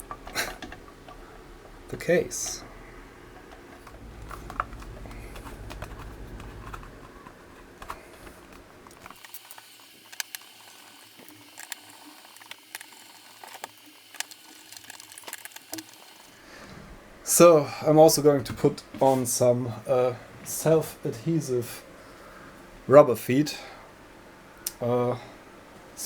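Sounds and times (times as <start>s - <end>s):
plastic parts clicking: 3.4s - 9.4s, 11.5s - 16.1s
low rumble: 3.9s - 8.0s.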